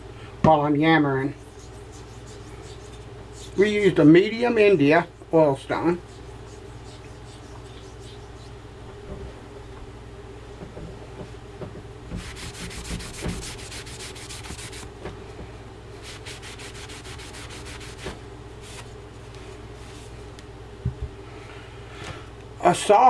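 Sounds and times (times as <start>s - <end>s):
scrubbing an oil stone: 1.3s - 4.1s, 5.1s - 8.6s, 12.2s - 14.9s, 16.0s - 18.9s.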